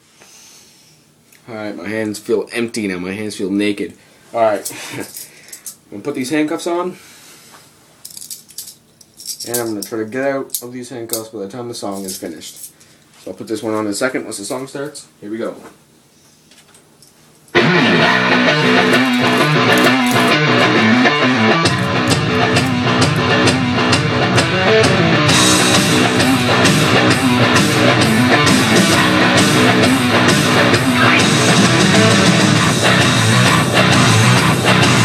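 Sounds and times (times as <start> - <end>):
guitar-led rock song: 17.6 - 35.0.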